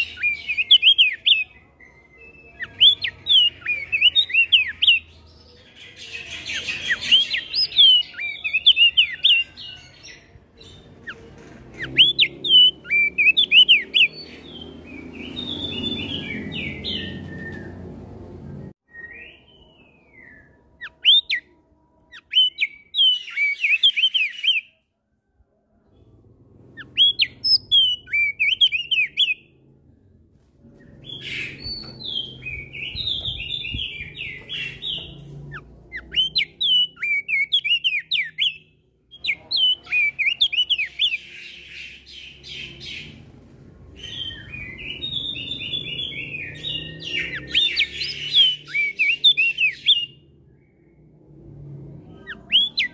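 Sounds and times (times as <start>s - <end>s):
bird twittering chirps: 26.8s - 29.4s
other birds calling: 30.8s - 43.3s.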